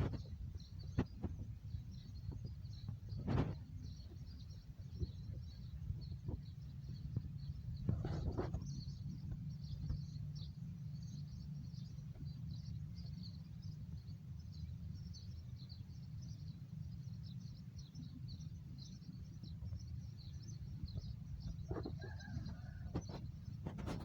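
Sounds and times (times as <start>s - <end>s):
small birds chirping: 0.0s - 24.0s
steady low rumble: 0.0s - 24.0s.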